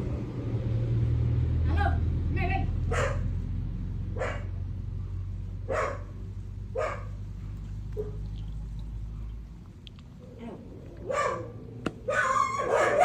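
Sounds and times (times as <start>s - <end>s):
low steady rumble: 0.0s - 13.0s
dog barking: 2.9s - 3.3s, 4.1s - 4.6s, 5.6s - 7.2s, 8.0s - 8.2s, 11.0s - 13.0s.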